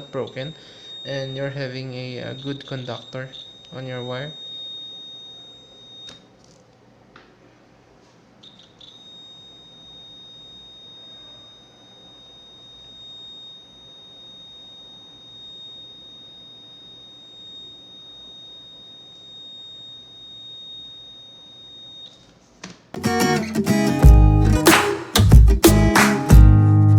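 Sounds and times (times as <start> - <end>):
multimeter continuity buzzer beep: 0.0 - 6.6, 8.4 - 22.6
guitar music: 23.0 - 26.9.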